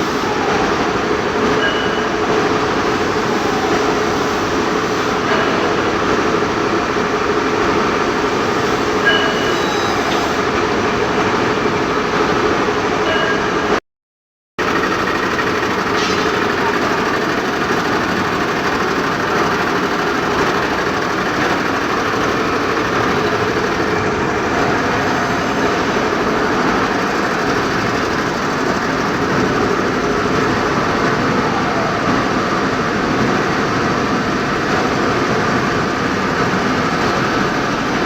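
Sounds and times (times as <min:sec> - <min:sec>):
industrial machine running: 0:00.0 - 0:13.8, 0:14.6 - 0:38.0.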